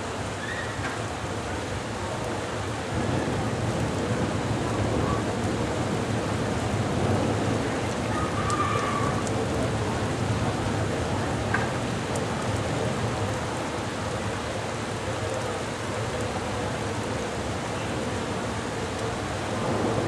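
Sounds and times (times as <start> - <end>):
heavy rain pouring: 0.0 - 20.0
raindrops ticking nearby: 0.0 - 20.0.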